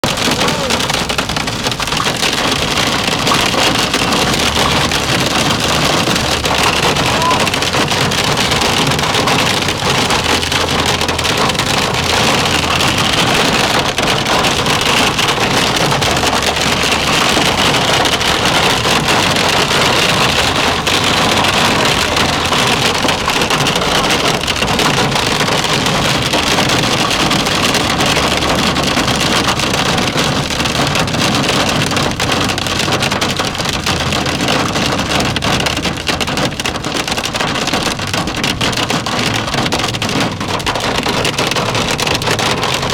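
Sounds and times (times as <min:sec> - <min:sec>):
hail drumming on car roof: 0:00.0 - 0:42.9.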